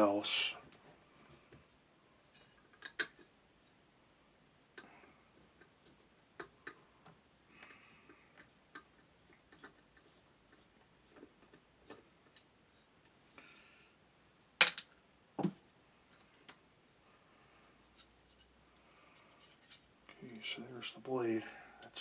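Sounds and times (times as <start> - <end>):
fan parts clicking and tapping: 2.3 - 3.3, 4.8 - 13.2.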